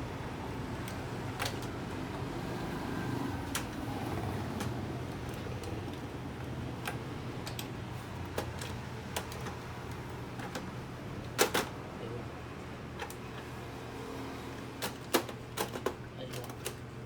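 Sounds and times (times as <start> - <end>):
plastic printer parts clicking: 0.8 - 1.8, 6.8 - 11.8, 14.8 - 16.9.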